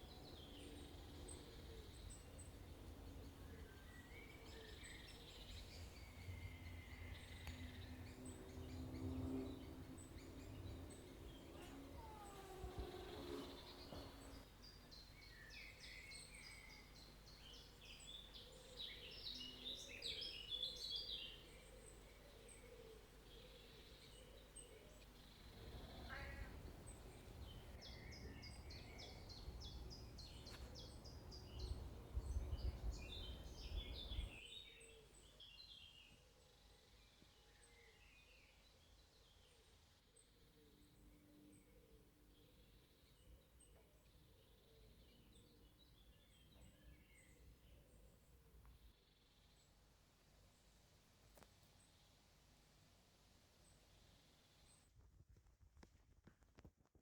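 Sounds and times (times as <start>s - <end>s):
small birds twittering: 0.0s - 39.4s.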